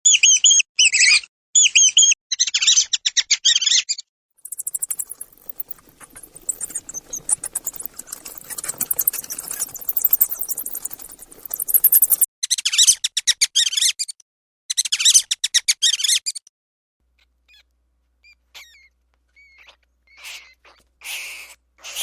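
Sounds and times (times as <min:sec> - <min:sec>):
mice squeaking: 0:04.4 - 0:12.3, 0:17.5 - 0:22.0
faint rustle: 0:04.5 - 0:12.3.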